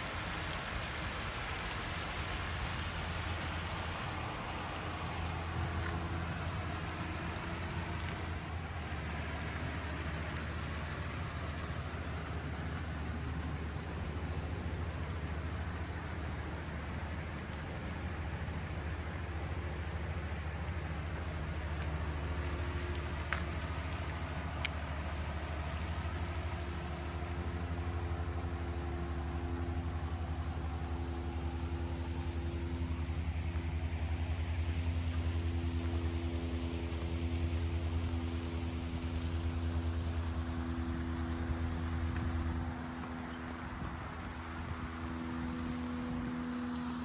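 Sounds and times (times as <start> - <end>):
engine low rumble: 0.0 - 47.0
faint steady hum: 0.0 - 47.0.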